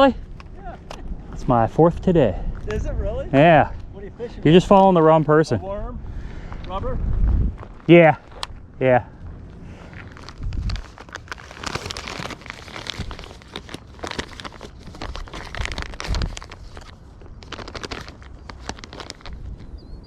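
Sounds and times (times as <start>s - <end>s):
crackling and rustling: 6.5s - 20.0s.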